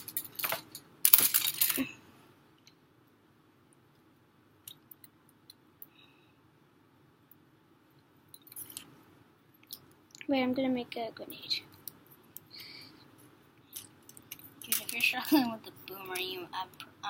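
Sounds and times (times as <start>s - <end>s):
wooden sticks clattering: 0.0s - 2.0s, 13.7s - 16.2s.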